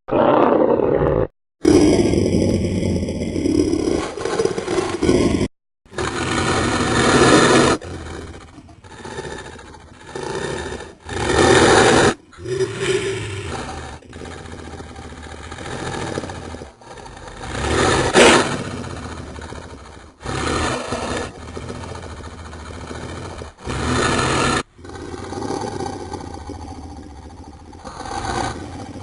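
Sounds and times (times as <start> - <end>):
dinosaur roars: 0.1 - 29.0
low long dinosaur growl: 0.1 - 29.0.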